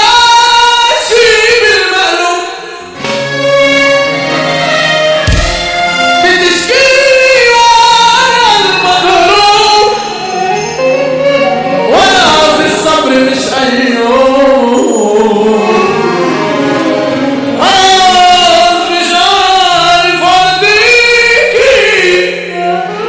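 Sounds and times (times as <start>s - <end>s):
song with sliding melodic lead: 2.9s - 18.2s.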